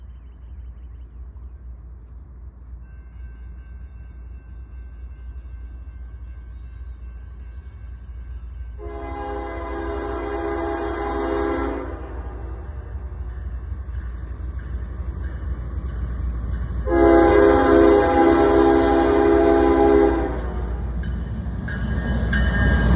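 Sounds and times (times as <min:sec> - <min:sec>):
train rumbling: 0:00.0 - 0:22.9
locomotive horn blast: 0:08.8 - 0:12.5, 0:16.8 - 0:20.9.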